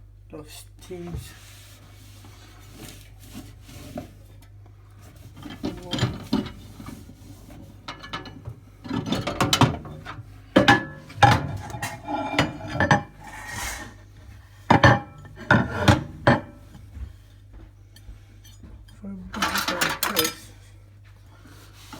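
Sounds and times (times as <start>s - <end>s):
objects scraping in microwave: 1.2s - 4.4s, 5.0s - 16.9s.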